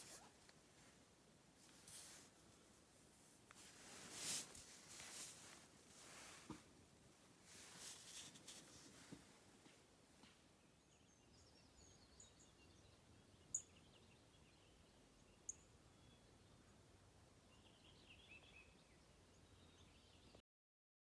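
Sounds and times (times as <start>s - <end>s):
background hiss: 0.0s - 20.2s
faint birds chirping: 10.3s - 20.4s.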